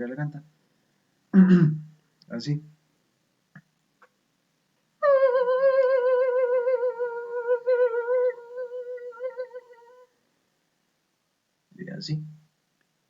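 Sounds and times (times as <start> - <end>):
man whining like puppy: 5.0 - 10.1.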